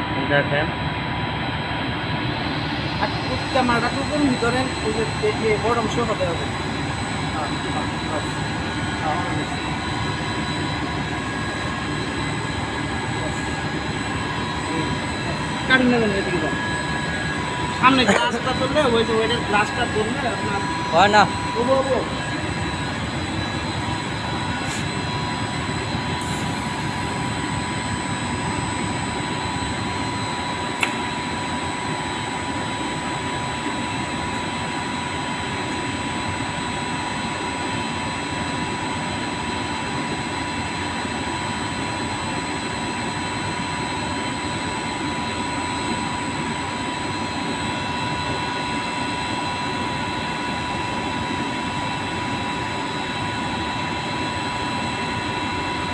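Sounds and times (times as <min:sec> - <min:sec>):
faint high whine: 0:00.0 - 0:55.9
welding hiss: 0:26.2 - 0:26.7.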